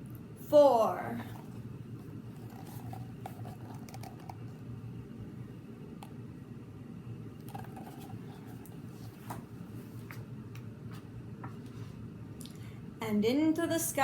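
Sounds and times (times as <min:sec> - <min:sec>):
book pages rustling: 0:02.3 - 0:04.4, 0:07.4 - 0:10.3.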